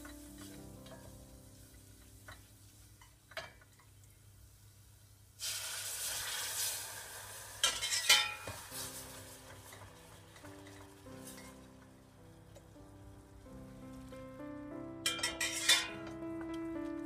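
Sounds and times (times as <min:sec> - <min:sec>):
food sizzling in hot pan: 0:00.0 - 0:14.2, 0:15.0 - 0:16.0
utensil clinking against pan: 0:07.6 - 0:08.6, 0:15.1 - 0:16.0.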